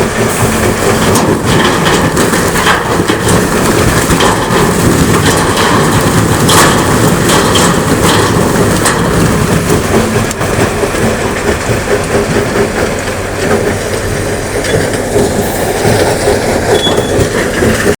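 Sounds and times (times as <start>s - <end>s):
heavy rumble: 0.0s - 18.0s
rock tumbling and clattering: 1.0s - 12.5s.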